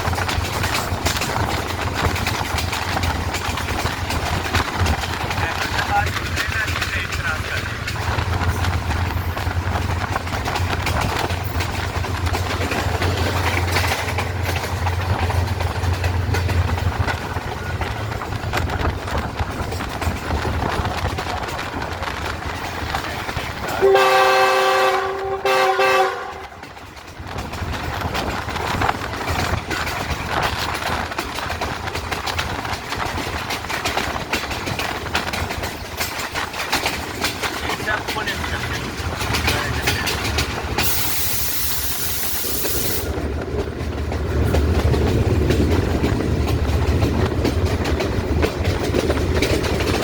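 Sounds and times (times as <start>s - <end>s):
locomotive engine hum: 0.0s - 50.0s
train running on rails: 0.0s - 50.0s
locomotive horn blast: 23.8s - 26.6s.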